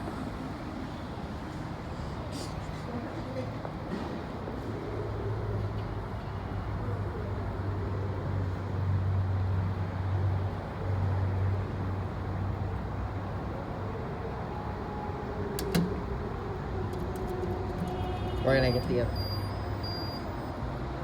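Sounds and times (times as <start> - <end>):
elevator pump humming: 14.6 - 19.9
sharp click: 15.6 - 16.0.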